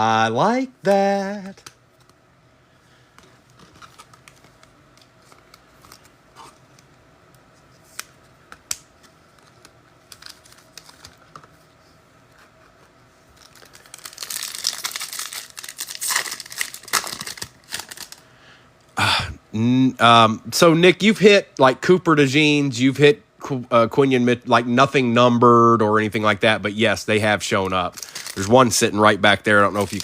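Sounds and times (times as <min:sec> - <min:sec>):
foil wrapper tearing and crinkling: 0:08.7 - 0:11.2, 0:13.3 - 0:18.2, 0:27.9 - 0:30.0.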